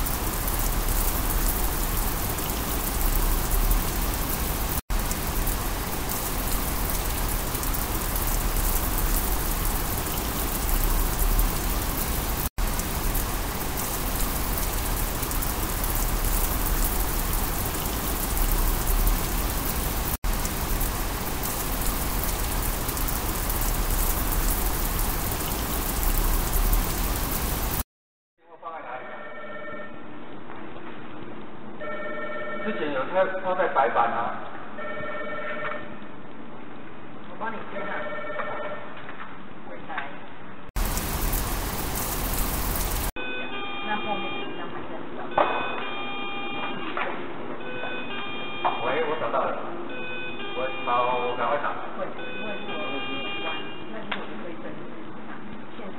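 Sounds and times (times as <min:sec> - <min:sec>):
telephone ringing tone: 0:31.9 - 0:32.7, 0:34.8 - 0:35.7.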